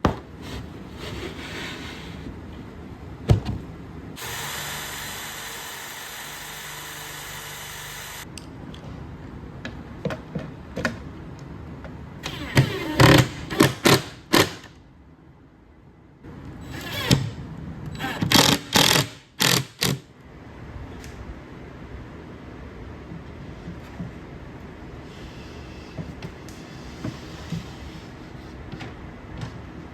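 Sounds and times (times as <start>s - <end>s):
steady tool hiss: 4.2s - 8.2s.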